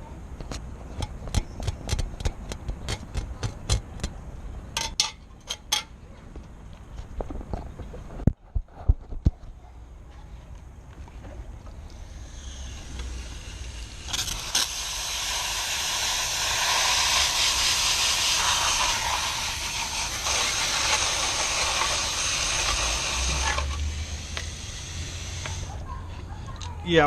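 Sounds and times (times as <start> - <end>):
strong hissing water spray: 11.8 - 25.8.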